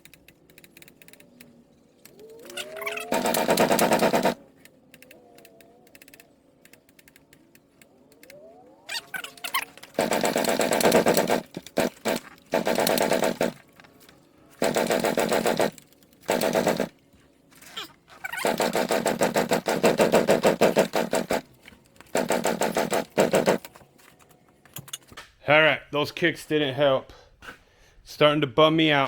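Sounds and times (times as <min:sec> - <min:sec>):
dirt bike engine sputtering on kick-start: 0:02.4 - 0:04.4, 0:09.4 - 0:13.6.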